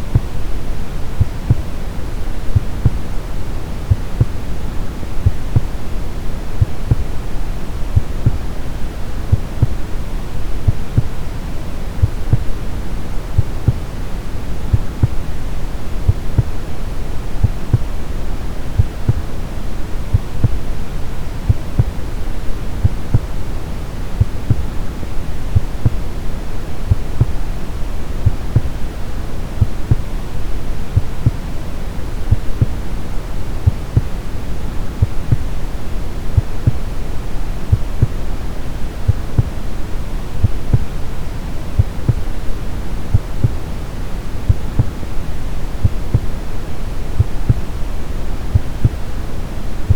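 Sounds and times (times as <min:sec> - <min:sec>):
heartbeat thumps: 0:00.0 - 0:00.6, 0:01.2 - 0:03.1, 0:03.9 - 0:05.8, 0:06.6 - 0:07.2, 0:07.9 - 0:08.6, 0:09.2 - 0:09.9, 0:10.6 - 0:11.1, 0:12.0 - 0:13.9, 0:14.7 - 0:15.3, 0:16.0 - 0:16.7, 0:17.4 - 0:18.0, 0:18.7 - 0:19.4, 0:20.1 - 0:20.8, 0:21.5 - 0:22.0, 0:22.6 - 0:23.4, 0:24.2 - 0:24.8, 0:25.5 - 0:26.1, 0:26.8 - 0:27.4, 0:28.2 - 0:28.8, 0:29.6 - 0:30.1, 0:30.9 - 0:31.4, 0:32.3 - 0:32.8, 0:33.6 - 0:34.2, 0:34.9 - 0:35.6, 0:36.4 - 0:37.0, 0:37.7 - 0:38.2, 0:39.1 - 0:39.6, 0:40.4 - 0:41.0, 0:41.8 - 0:43.7, 0:44.5 - 0:45.0, 0:45.8 - 0:46.4, 0:47.2 - 0:47.8, 0:48.5 - 0:49.2
brown noise hiss: 0:00.0 - 0:49.9.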